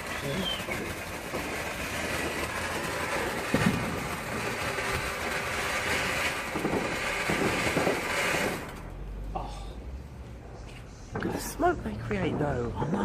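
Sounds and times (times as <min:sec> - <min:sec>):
firework hissing crackle: 0:00.0 - 0:09.2.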